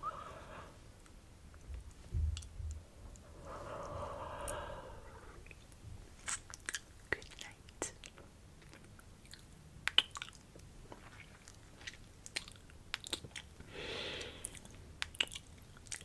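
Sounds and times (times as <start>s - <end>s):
soft breathy sound: 0.0s - 1.0s, 2.7s - 6.0s, 13.6s - 14.8s
wet mouth clicks and smacks: 5.4s - 13.6s, 14.4s - 16.0s.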